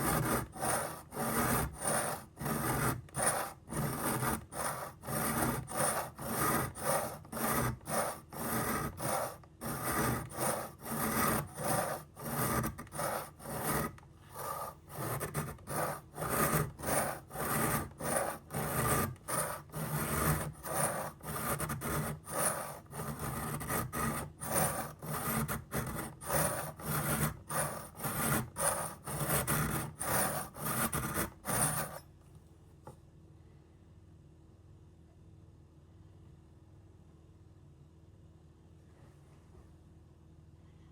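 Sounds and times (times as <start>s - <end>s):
knife rasping on sharpener: 0.0s - 32.0s.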